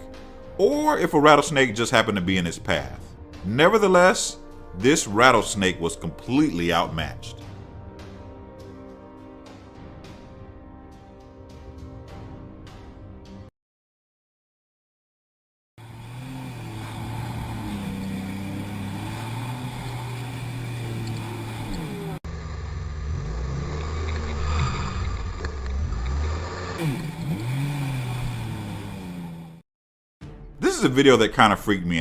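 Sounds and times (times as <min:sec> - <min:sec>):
different engine-like sound: 0:15.8 - 0:29.6
engine running: 0:15.8 - 0:29.6.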